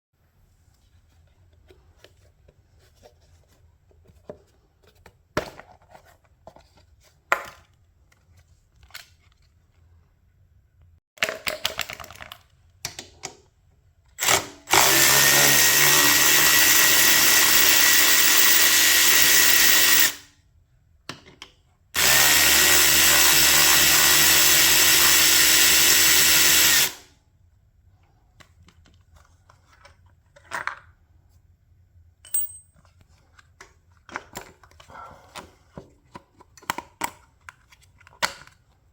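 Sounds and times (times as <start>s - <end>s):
power tool motor running: 14.2s - 20.2s, 22.0s - 27.0s.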